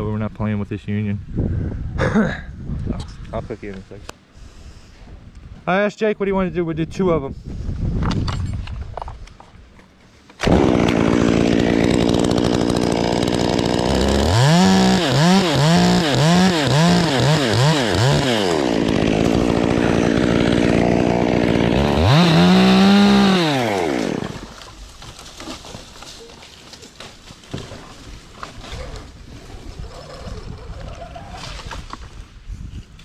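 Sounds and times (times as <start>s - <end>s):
chainsaw idling and revving: 10.4s - 24.6s.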